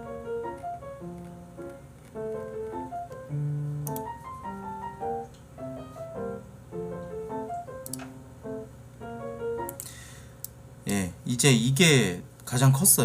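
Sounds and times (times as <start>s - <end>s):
soft piano music: 0.0s - 10.0s.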